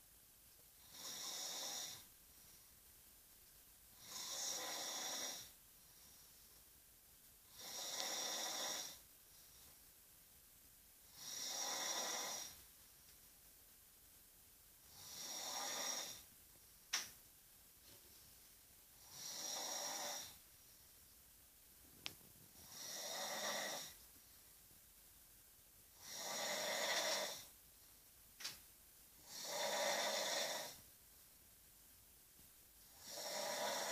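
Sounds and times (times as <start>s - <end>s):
loud hissy snoring: 0.7s - 2.7s, 3.9s - 6.6s, 7.4s - 9.8s, 11.0s - 12.7s, 14.8s - 16.3s, 18.9s - 20.4s, 22.5s - 24.0s, 25.9s - 27.6s, 29.2s - 30.8s, 32.8s - 33.9s.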